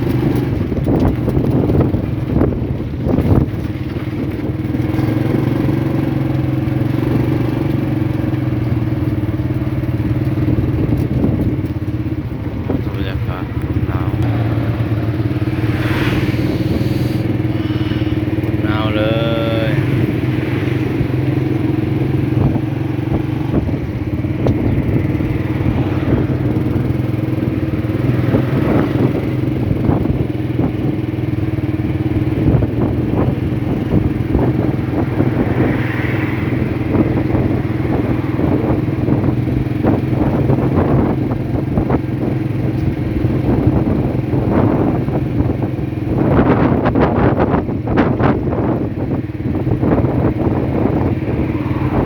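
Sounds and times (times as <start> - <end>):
light rattles and clatter: 0.0 - 6.6, 7.4 - 15.2
motorcycle engine cruising: 0.0 - 52.0.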